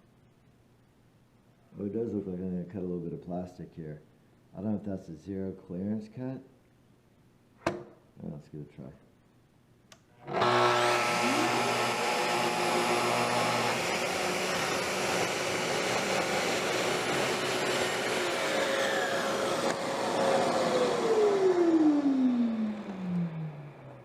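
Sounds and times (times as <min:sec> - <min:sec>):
dust extractor running: 0:10.2 - 0:24.0
track saw running: 0:10.2 - 0:24.0.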